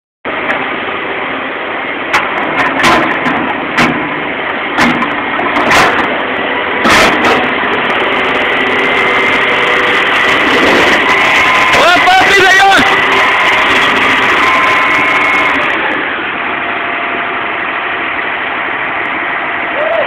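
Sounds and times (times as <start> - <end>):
excavator diesel engine running: 0.3 - 20.0
sharp metal knocks: 2.1 - 4.2, 4.8 - 6.2, 6.8 - 8.0.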